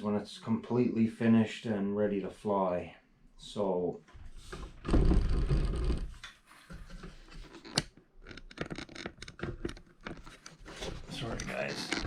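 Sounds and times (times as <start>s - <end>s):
small clicks and scrapes: 5.5s - 12.0s.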